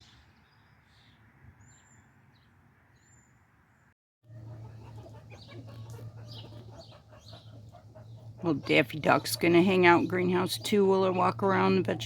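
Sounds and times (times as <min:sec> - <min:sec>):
high bird calls: 0:04.3 - 0:11.3
chickens clucking: 0:04.3 - 0:12.0.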